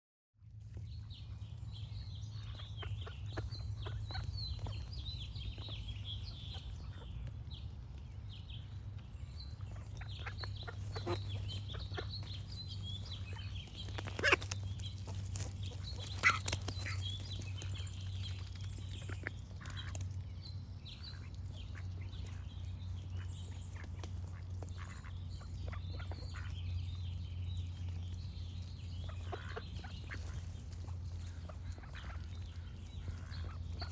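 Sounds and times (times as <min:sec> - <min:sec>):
songbirds chirping: 0:00.4 - 0:33.9
ducks quacking: 0:02.4 - 0:07.2, 0:09.6 - 0:18.0, 0:21.0 - 0:27.0, 0:29.0 - 0:33.9.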